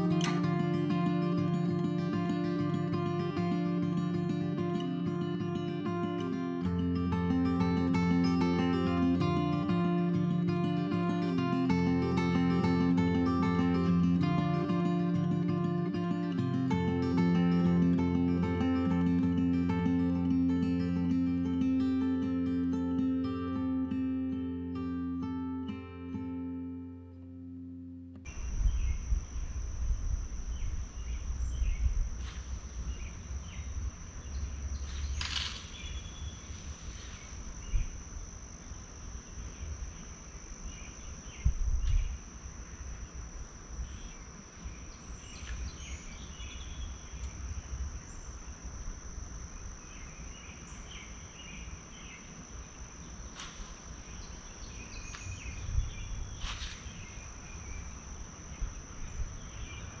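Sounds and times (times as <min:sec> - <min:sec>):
insects droning: 0:00.0 - 1:00.0
bird chirps: 0:30.4 - 0:38.0, 0:53.1 - 0:58.0.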